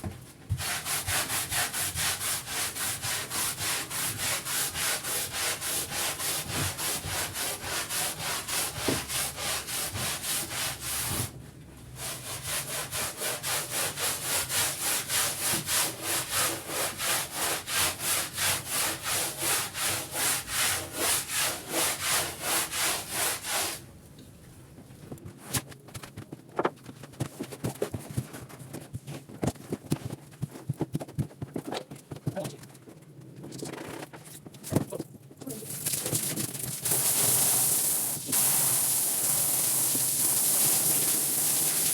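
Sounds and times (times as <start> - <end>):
stiff brush scrubbing a rug: 0.6 - 11.2, 12.0 - 23.8
faint taps and rustles: 24.2 - 35.2.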